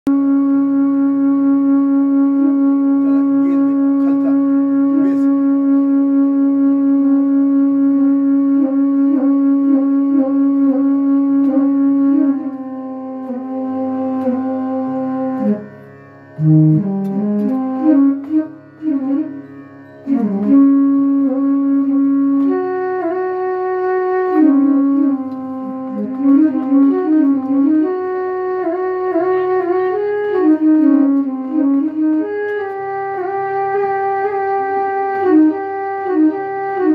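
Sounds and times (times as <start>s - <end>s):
devotional melody with bending notes: 0.1s - 36.9s
steady low drone: 0.1s - 36.9s.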